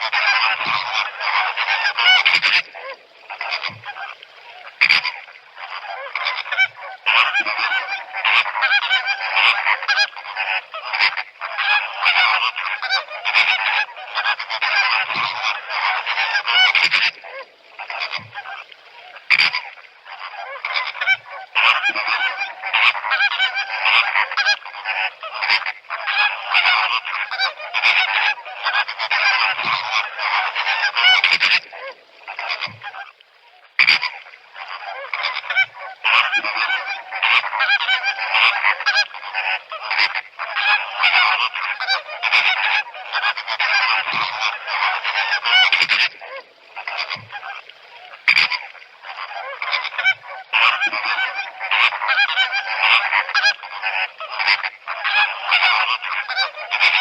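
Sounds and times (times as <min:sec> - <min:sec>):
flamingos honking: 0:00.0 - 0:57.0.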